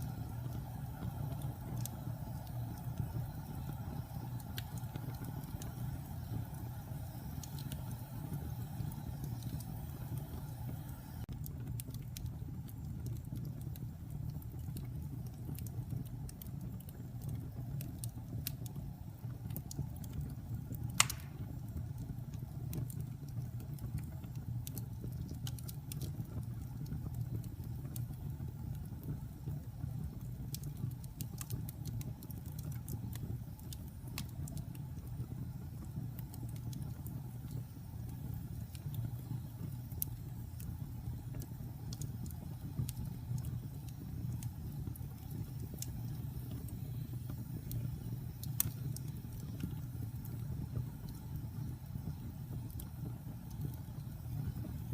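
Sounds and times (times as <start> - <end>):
fire crackles: 0.0 - 54.9
fire flames burning: 0.0 - 54.9
loud pop of fire: 20.9 - 21.9.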